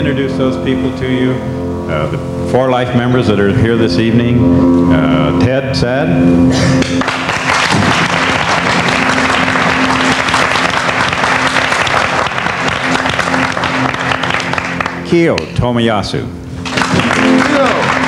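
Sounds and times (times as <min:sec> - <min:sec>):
soft music: 0:00.0 - 0:18.0
audience applauding: 0:06.8 - 0:15.5, 0:16.6 - 0:18.0.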